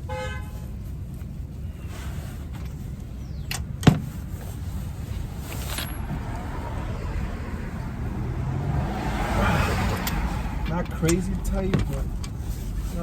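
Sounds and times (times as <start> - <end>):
low rumble: 4.7 - 13.0.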